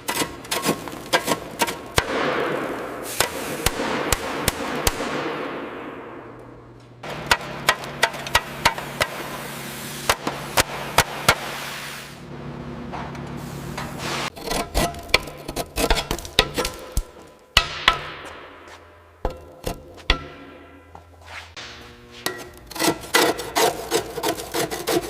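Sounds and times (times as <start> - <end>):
hammer blows: 2.0 - 14.4.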